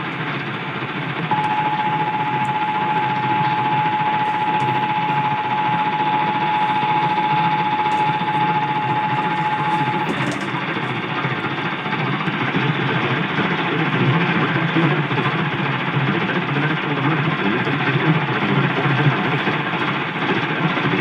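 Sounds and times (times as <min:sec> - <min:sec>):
steady alert tone: 0:01.3 - 0:11.2
radio static hiss: 0:01.3 - 0:11.9.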